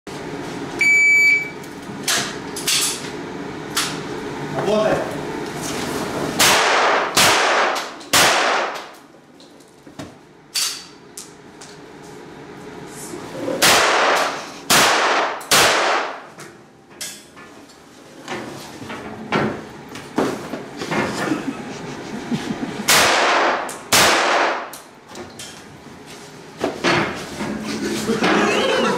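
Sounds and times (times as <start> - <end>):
pistol shots: 6.4 - 8.8, 13.6 - 16.2, 22.9 - 24.7.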